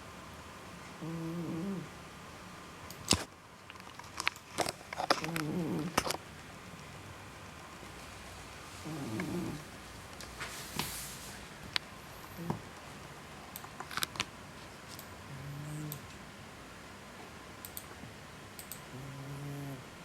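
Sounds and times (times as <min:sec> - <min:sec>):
cat snoring: 0:01.0 - 0:01.9, 0:05.2 - 0:06.0, 0:08.8 - 0:09.7, 0:15.3 - 0:16.0, 0:18.9 - 0:19.9
light clicks: 0:17.6 - 0:17.9, 0:18.6 - 0:18.9.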